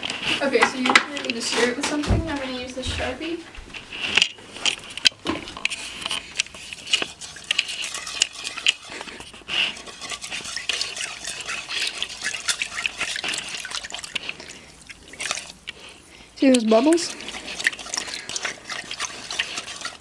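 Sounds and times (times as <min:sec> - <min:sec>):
wet slime sloshing: 0:03.8 - 0:20.0
marker tapping against bowl: 0:05.7 - 0:14.2.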